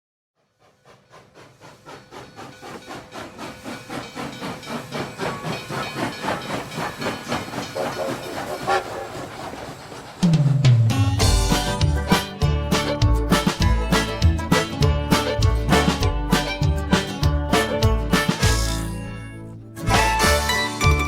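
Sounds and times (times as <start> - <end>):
steam locomotive chuffing: 0.4 - 19.2, 19.8 - 21.0.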